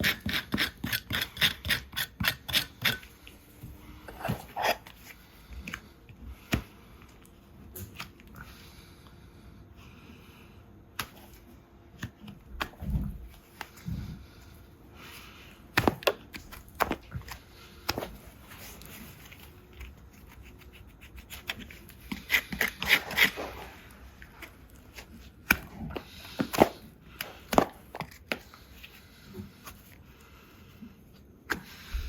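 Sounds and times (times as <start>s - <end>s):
scraping strokes on hoof: 0.0s - 3.1s.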